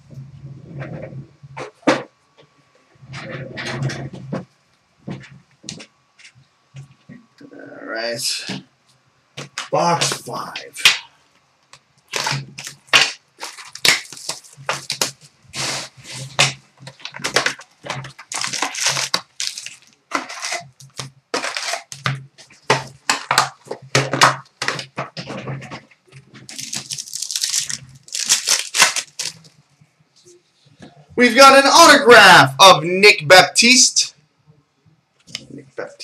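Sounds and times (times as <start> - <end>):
faint low hum: 0.0 - 31.4
wrapping tearing and crumpling: 12.1 - 22.1, 26.4 - 29.6.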